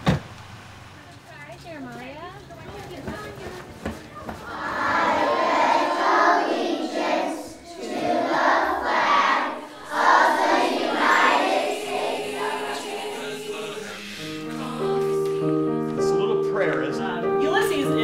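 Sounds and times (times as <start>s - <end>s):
children's voices together: 3.6s - 15.6s
held piano-like tones: 10.1s - 18.0s.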